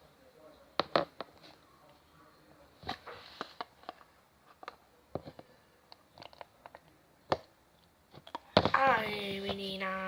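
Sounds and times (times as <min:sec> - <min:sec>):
plastic bottles clicking and tapping: 0:00.8 - 0:01.4, 0:02.8 - 0:07.5, 0:08.1 - 0:09.6.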